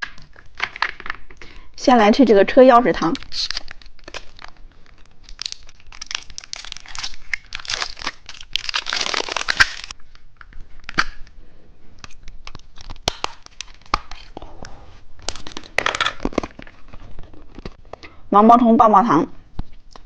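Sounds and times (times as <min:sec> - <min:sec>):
candy wrapper crinkling: 0:02.9 - 0:11.2, 0:12.0 - 0:14.4, 0:15.2 - 0:17.8.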